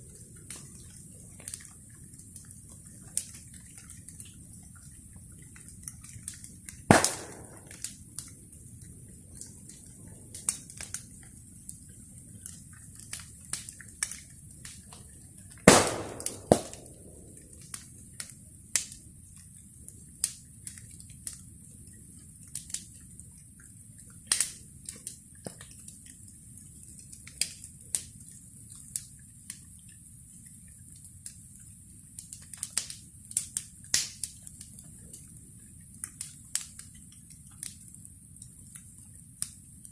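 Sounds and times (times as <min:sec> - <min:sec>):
wood fire crackling: 0:00.0 - 0:29.6, 0:30.2 - 0:39.9
loud sharp pops: 0:06.9 - 0:07.9, 0:15.7 - 0:17.4.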